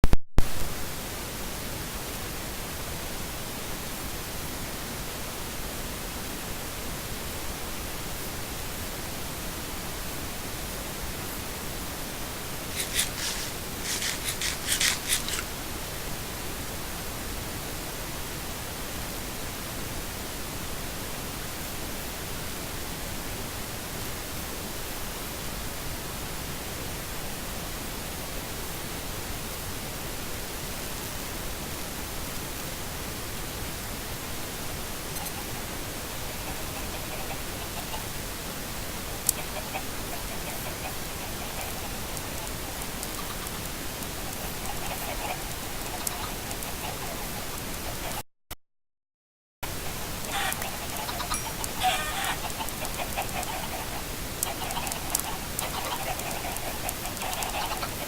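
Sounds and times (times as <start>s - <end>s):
steady hiss: 0.4s - 48.2s, 49.6s - 58.0s
sharp high clicks: 12.8s - 15.5s.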